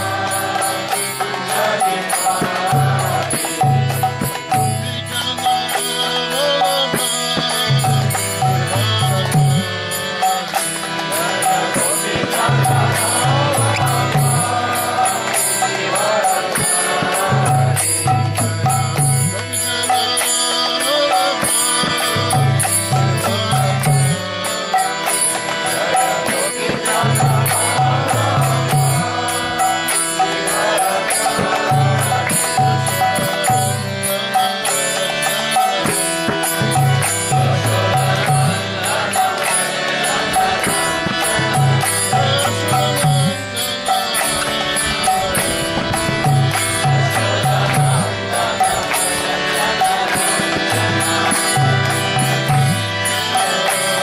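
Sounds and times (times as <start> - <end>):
devotional chanted singing: 0.0 - 54.0
steady drone: 0.0 - 54.0.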